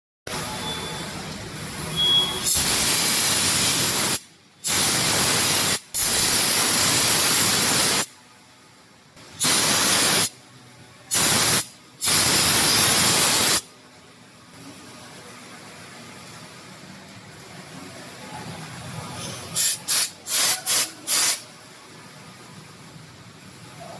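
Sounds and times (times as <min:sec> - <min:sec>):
air gun hiss bursts: 0:02.4 - 0:08.1, 0:09.4 - 0:10.4, 0:11.1 - 0:13.7, 0:19.5 - 0:21.6.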